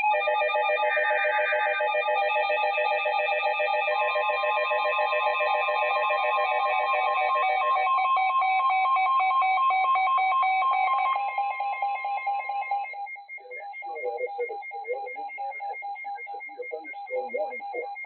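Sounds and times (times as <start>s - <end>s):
electronic beeping tones: 12.0s - 18.0s.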